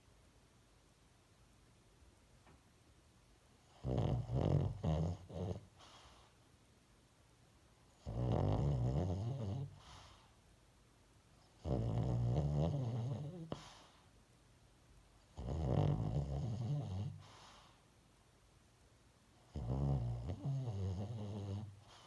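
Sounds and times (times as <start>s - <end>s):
dog snoring: 3.6s - 6.3s, 7.9s - 10.3s, 11.4s - 14.0s, 15.3s - 17.8s, 19.4s - 22.0s.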